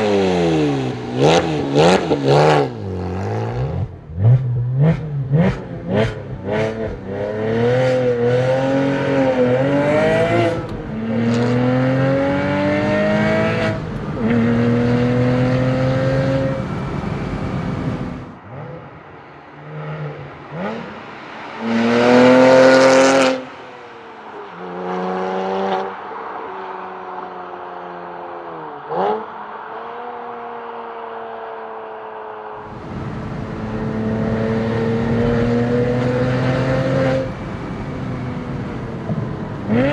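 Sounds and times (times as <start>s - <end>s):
sports car engine revving: 0.0s - 18.9s, 32.6s - 39.9s.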